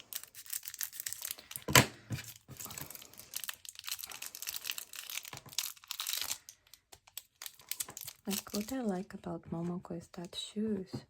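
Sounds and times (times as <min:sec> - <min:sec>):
packaging crinkling: 0:00.0 - 0:09.1.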